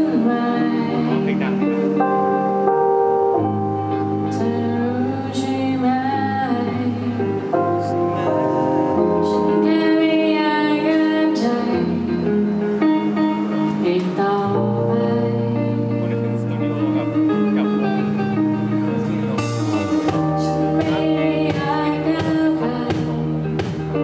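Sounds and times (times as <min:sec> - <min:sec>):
electronic pop song: 0:19.4 - 0:24.0.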